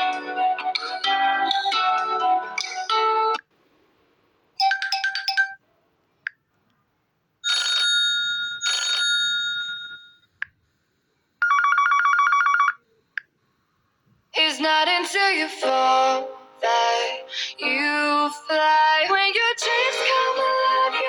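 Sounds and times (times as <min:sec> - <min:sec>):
phone ringtones: 0:07.4 - 0:10.3, 0:11.4 - 0:12.8.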